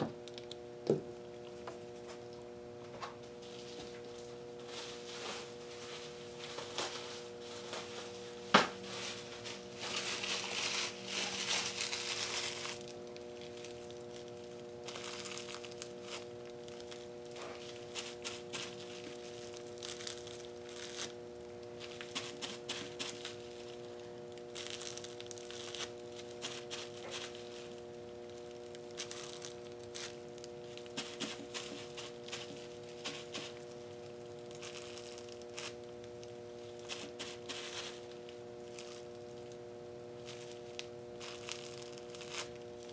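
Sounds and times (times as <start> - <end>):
steady hum: 0.0 - 42.9
bubble wrap crinkling: 3.2 - 42.9.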